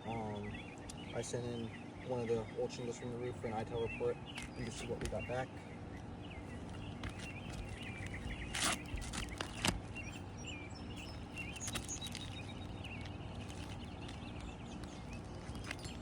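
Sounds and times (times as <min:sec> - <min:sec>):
low outdoor rumble: 0:00.0 - 0:16.0
small birds chirping: 0:00.0 - 0:16.0
scuffing knocks: 0:06.6 - 0:09.9.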